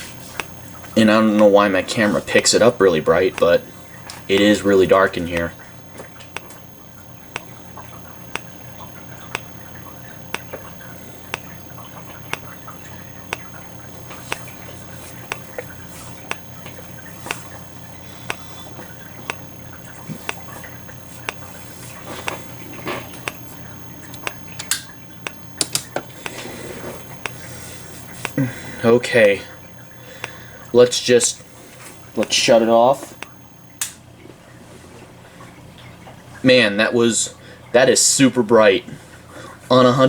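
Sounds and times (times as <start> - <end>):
irregular clicks: 0.0 - 28.9, 29.6 - 30.8, 32.0 - 34.0
strobe ticking: 0.0 - 34.1
faint high-pitched capacitor whine: 0.0 - 40.0.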